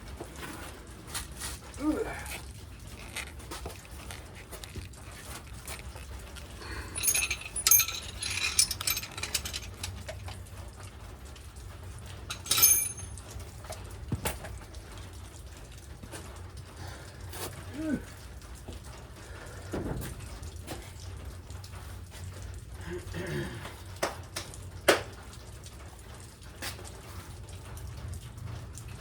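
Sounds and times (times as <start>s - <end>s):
metal tools clinking and rattling: 2.9s - 10.8s, 12.1s - 13.8s.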